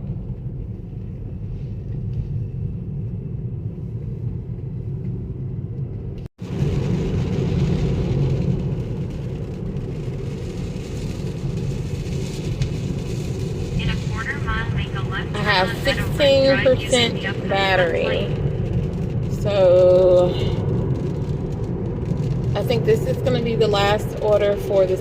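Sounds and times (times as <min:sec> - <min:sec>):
car road noise: 0:00.0 - 0:25.0
rain: 0:06.4 - 0:25.0.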